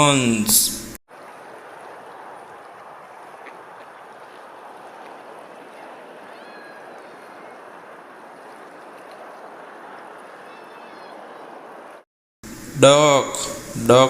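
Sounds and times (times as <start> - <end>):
water rushing: 1.1 - 14.0
faint bird chirps: 5.8 - 7.6, 10.4 - 11.5.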